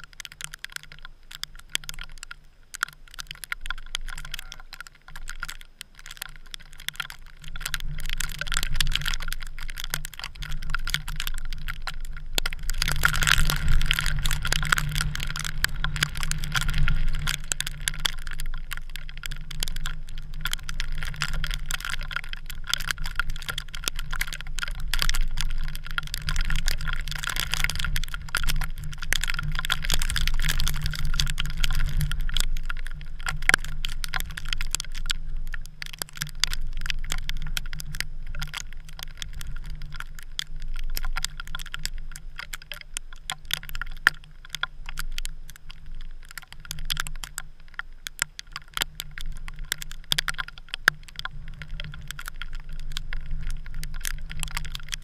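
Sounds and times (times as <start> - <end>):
snow ticking on camera: 0.0 - 55.0
wind rumble: 6.9 - 42.4.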